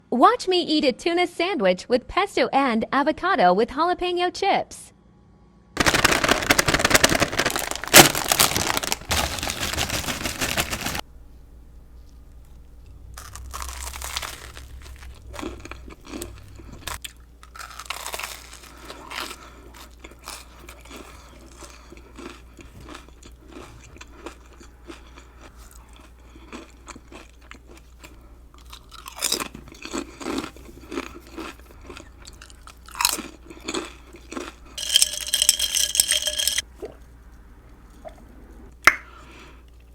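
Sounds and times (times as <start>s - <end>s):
crunching chips: 5.8s - 11.0s, 12.0s - 36.6s
chewing food: 11.9s - 38.7s.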